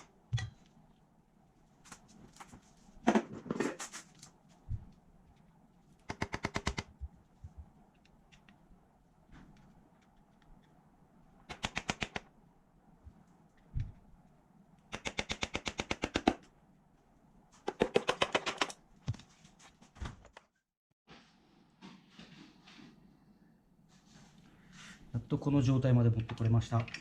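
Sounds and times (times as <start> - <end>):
tool clicking rapidly: 6.1 - 6.9, 14.9 - 16.4.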